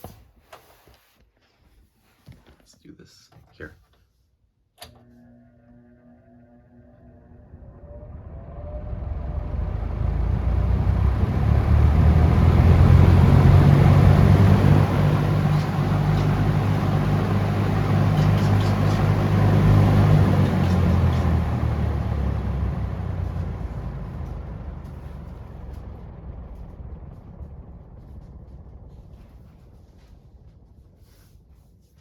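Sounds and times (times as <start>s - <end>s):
fan wind noise on microphone: 7.2s - 32.0s.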